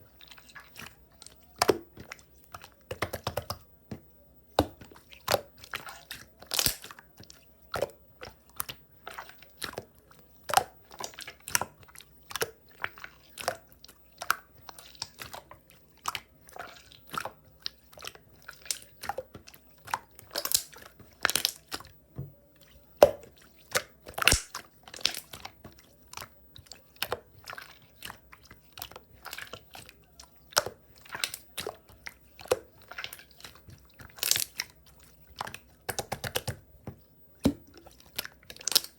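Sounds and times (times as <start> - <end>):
slime clicking and popping: 6.4 - 7.0, 20.3 - 21.7, 24.1 - 25.3.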